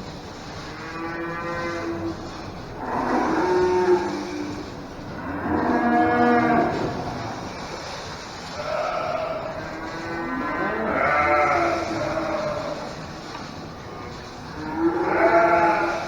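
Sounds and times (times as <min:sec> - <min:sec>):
cattle mooing: 0:00.8 - 0:02.2, 0:02.8 - 0:07.6, 0:08.6 - 0:13.1, 0:14.5 - 0:16.0.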